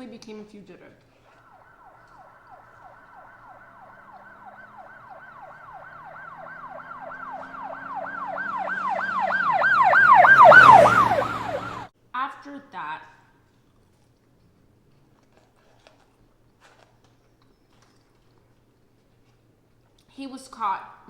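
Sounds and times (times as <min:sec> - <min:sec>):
emergency siren yelping: 0:01.3 - 0:11.9.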